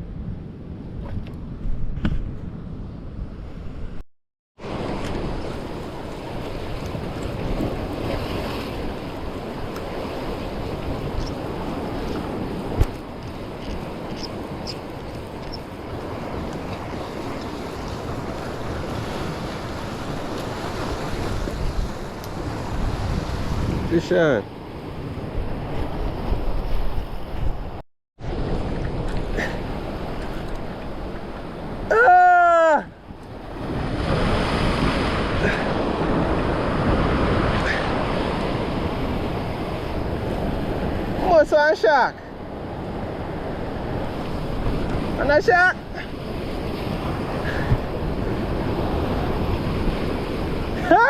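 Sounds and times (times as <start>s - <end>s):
surf washing against rocks: 4.6s - 51.0s
wind buffeting microphone: 5.2s - 31.9s, 42.3s - 51.0s.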